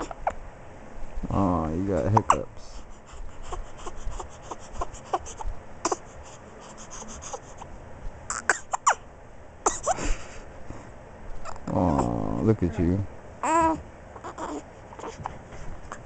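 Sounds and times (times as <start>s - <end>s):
baby squeaks: 0.0s - 0.3s
baby hiccups: 8.3s - 9.0s, 9.6s - 10.0s.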